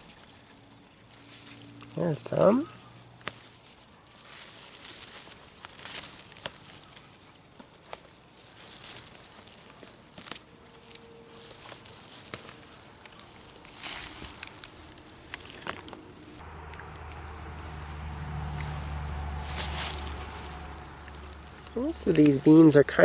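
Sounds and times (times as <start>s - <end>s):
foliage rustling and crackling: 0.0s - 23.0s
bean pods snapping: 5.6s - 8.2s, 11.5s - 22.6s.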